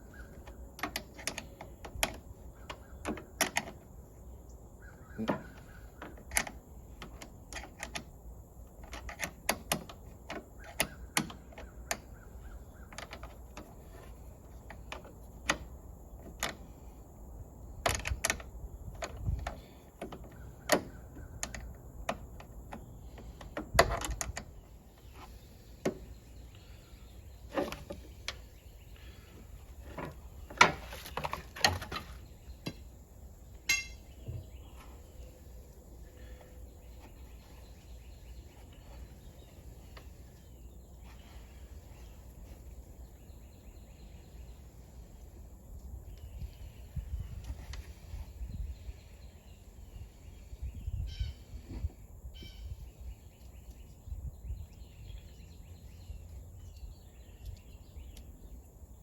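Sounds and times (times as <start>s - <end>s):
hand tools clinking on metal: 33.6s - 34.1s.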